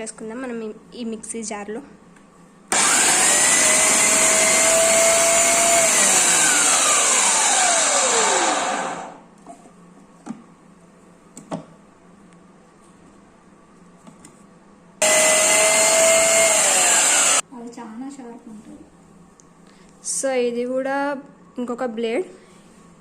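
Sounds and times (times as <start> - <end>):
mixer grinder motor whining: 2.7 - 9.2, 15.0 - 17.4.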